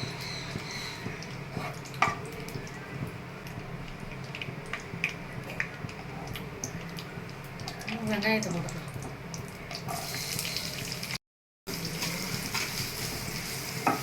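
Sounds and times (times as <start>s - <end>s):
ghee sizzling: 0.0s - 14.0s.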